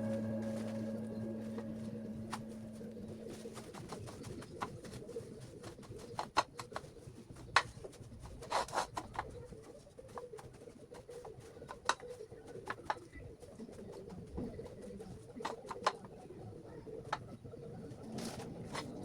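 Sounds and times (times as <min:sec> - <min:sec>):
low steady hum: 0:00.0 - 0:04.0.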